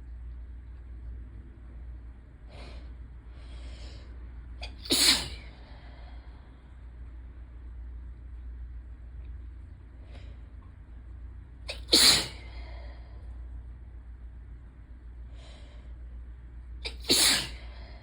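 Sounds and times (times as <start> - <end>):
person sneezing: 4.6 - 5.6, 11.7 - 12.6, 16.8 - 17.8.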